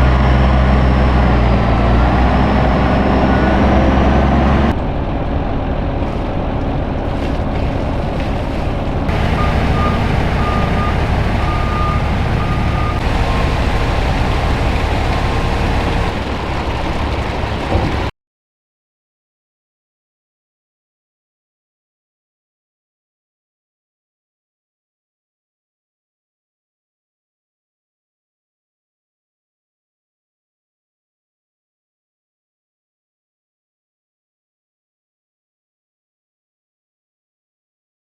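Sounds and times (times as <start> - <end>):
diesel construction equipment running: 0.0 - 18.1
machinery working: 0.0 - 18.1
reversing alarm beeping: 9.1 - 16.1.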